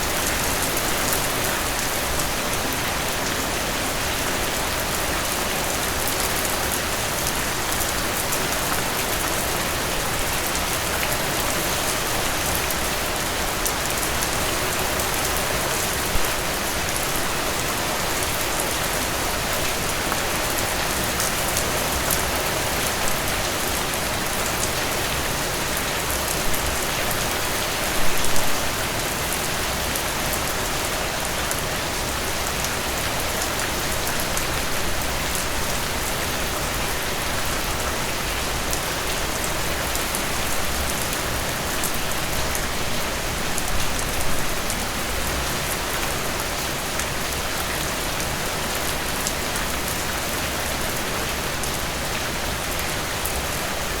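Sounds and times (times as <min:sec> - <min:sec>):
heavier rain splashes: 0:00.0 - 0:54.0
steady rain falling: 0:00.0 - 0:54.0.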